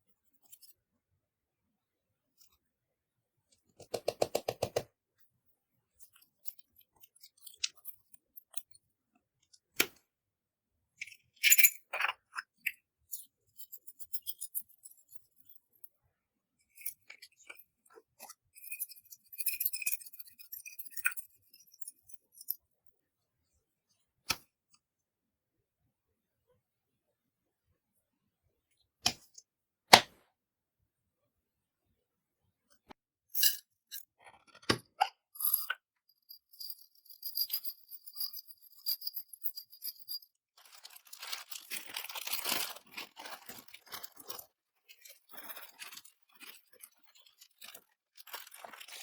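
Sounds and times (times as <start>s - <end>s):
makeup containers clicking: 3.8s - 4.9s.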